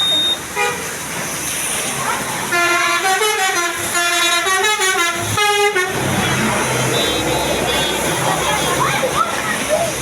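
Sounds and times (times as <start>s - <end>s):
bus horn melody: 2.5s - 8.0s.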